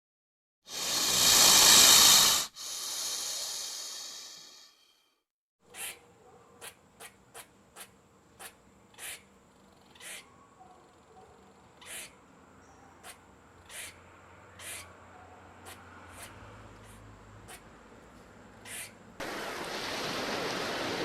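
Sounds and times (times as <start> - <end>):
cat hissing: 0.7 - 4.4, 5.7 - 6.0, 6.6 - 10.3, 11.7 - 12.2, 13.0 - 17.6, 18.6 - 19.0.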